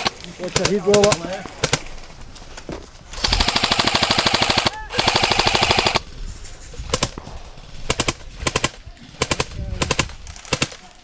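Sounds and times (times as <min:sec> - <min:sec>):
airsoft guns firing bursts: 0:00.0 - 0:02.0, 0:03.1 - 0:06.1, 0:06.9 - 0:11.0
distant airsoft shots: 0:00.0 - 0:02.0, 0:03.1 - 0:06.1.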